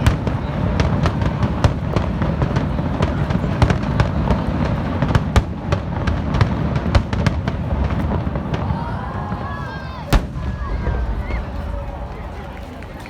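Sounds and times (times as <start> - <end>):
fireworks bangs and crackles: 0.0 - 13.0
low rumble: 10.2 - 13.0.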